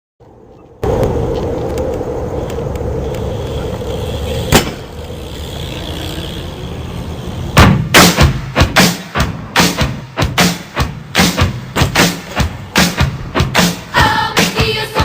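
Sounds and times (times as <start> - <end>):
music with percussive hits: 7.6 - 15.0.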